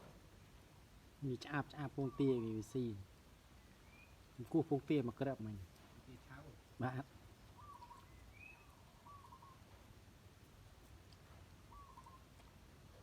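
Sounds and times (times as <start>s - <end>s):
faint bird chirps: 1.2s - 5.4s, 6.1s - 10.0s, 10.9s - 13.0s.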